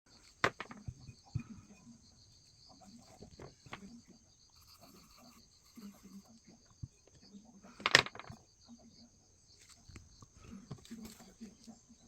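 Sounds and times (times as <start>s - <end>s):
insects trilling: 0.1s - 12.0s.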